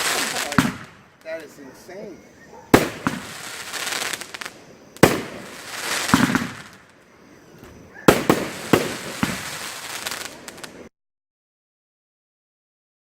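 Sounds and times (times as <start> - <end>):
firework shells bursting: 0.0 - 1.6, 2.7 - 10.9
firework crackling hiss: 0.0 - 10.9.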